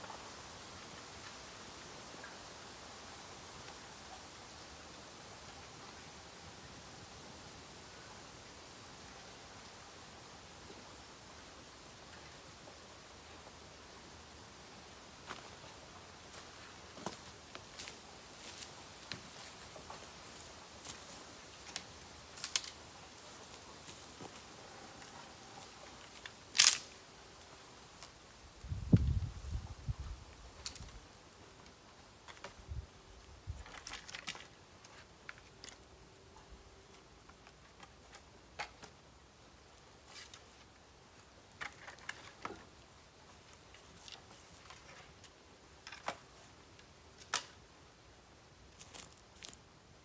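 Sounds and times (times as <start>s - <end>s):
low background hiss: 0.0s - 50.0s
bamboo crackling and popping in fire: 17.0s - 24.4s, 25.0s - 29.0s, 30.2s - 32.6s, 33.5s - 35.9s, 39.6s - 47.8s
bonfire crackling: 21.6s - 24.4s.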